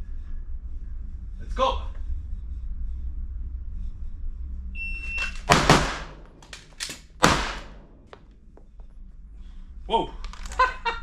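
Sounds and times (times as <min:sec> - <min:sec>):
pistol shots: 0:05.2 - 0:08.3.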